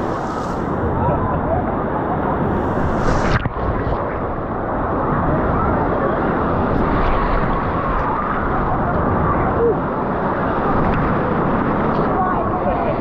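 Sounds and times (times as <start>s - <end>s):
waves rushing and breaking: 0.0s - 13.0s
crowd of swimmers' voices: 4.0s - 13.0s.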